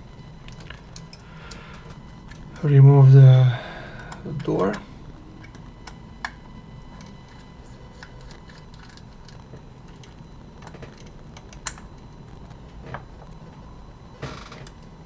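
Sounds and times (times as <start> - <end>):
small tools clicking and tapping: 5.4 - 12.1.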